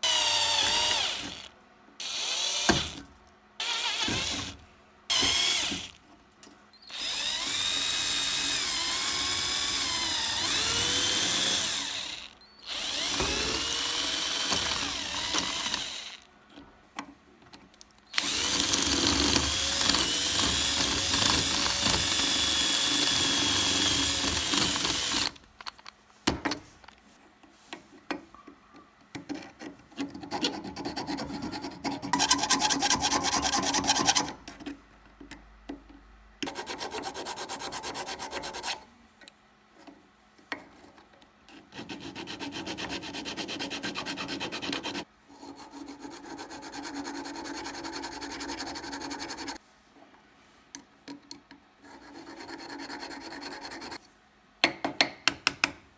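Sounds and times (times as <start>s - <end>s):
tool rubbing against silver: 41.5s - 49.6s, 51.8s - 54.0s.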